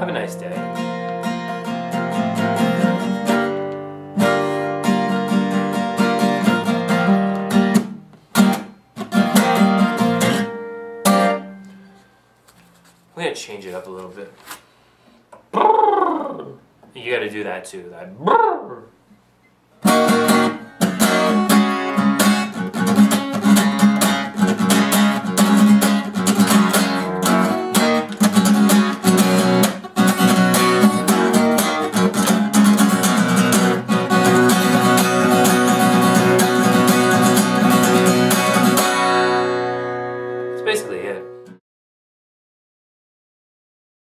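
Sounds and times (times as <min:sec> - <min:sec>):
acoustic guitar strumming chords: 0:00.0 - 0:13.0, 0:19.8 - 0:41.6.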